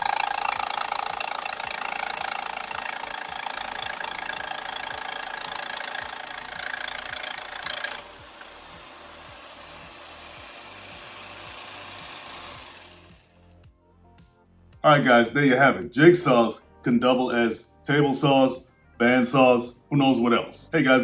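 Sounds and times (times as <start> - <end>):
jigsaw cutting plexiglass: 0.0 - 13.4.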